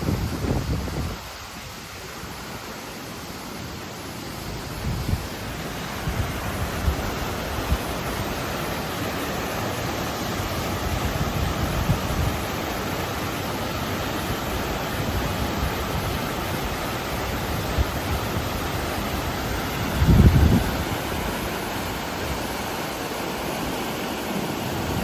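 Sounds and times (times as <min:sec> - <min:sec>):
wind buffeting microphone: 0:00.0 - 0:01.8, 0:04.6 - 0:08.4, 0:10.4 - 0:12.6, 0:14.6 - 0:22.8
river rushing over rocks: 0:00.0 - 0:25.0.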